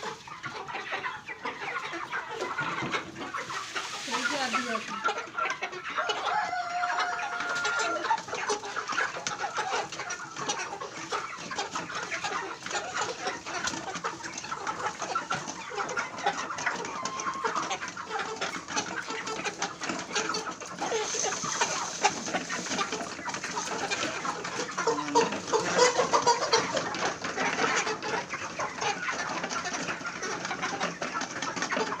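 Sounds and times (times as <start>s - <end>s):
chickens clucking and calling: 0.0s - 32.0s.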